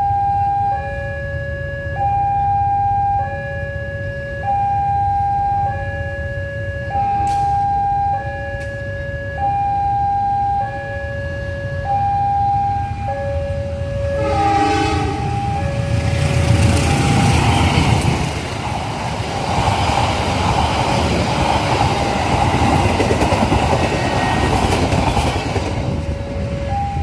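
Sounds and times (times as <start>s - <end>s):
two-note crossing alarm: 0.0s - 17.4s, 26.0s - 27.0s
train horn: 14.1s - 15.9s
train wheels rumbling on rails: 14.2s - 27.0s.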